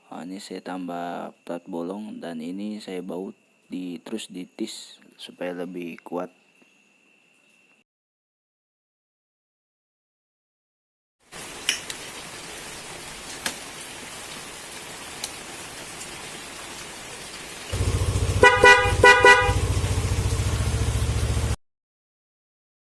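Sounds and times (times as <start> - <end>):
scooter engine rumbling: 17.7 - 21.6
horn honks: 17.8 - 21.5.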